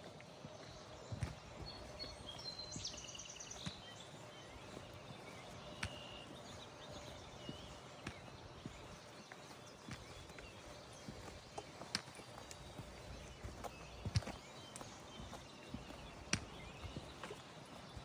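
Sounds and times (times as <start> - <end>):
light taps and clicks: 5.5 - 18.0.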